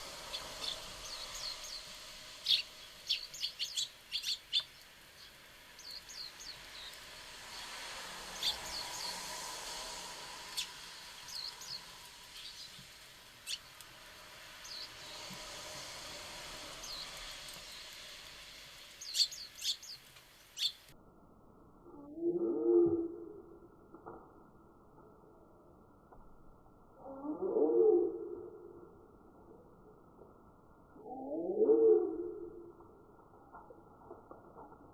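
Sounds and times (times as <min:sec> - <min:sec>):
faint background hiss: 0:00.0 - 0:21.5
songbirds chirping: 0:00.2 - 0:09.2, 0:10.5 - 0:13.8, 0:14.6 - 0:15.5, 0:18.9 - 0:20.9.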